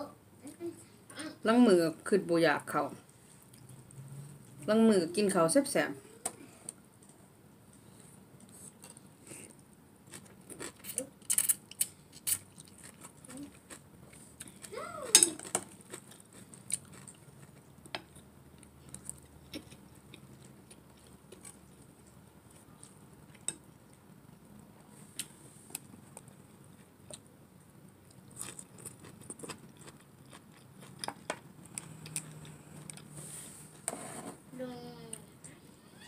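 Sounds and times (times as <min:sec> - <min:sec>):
chewing and biting food: 0:10.1 - 0:14.7, 0:28.1 - 0:33.1.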